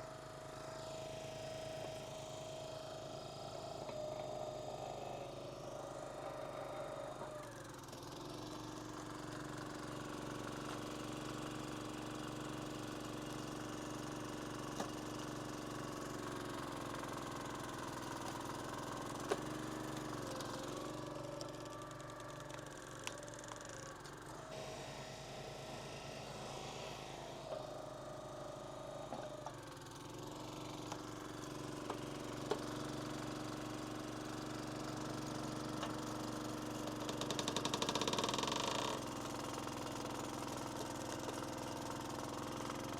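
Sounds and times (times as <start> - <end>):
log splitter engine running: 0.0 - 42.9.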